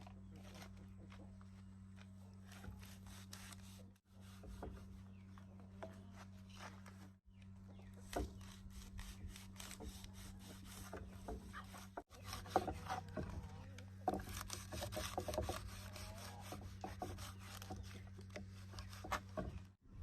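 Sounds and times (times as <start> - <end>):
objects knocking and rubbing: 9.8 - 19.8.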